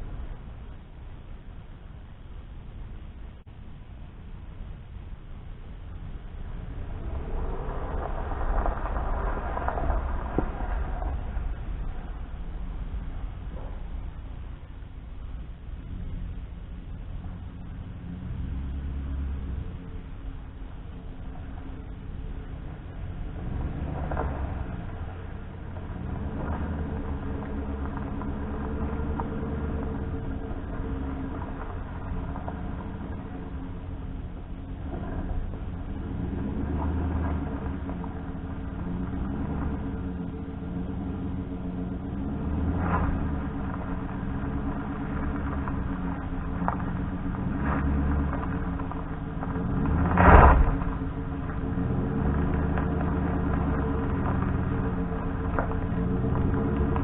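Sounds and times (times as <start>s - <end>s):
vehicle engine running: 0.0s - 57.0s.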